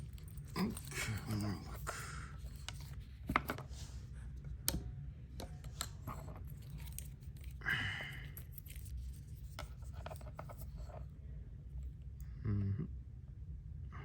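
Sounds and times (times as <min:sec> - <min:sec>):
steady low hum: 0:00.0 - 0:14.0
wristwatch clicks and scrapes: 0:05.6 - 0:07.6, 0:08.2 - 0:11.0.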